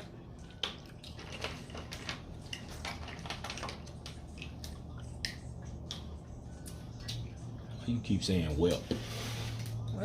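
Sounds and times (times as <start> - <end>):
wet chewing and lip smacking: 3.8 - 7.6.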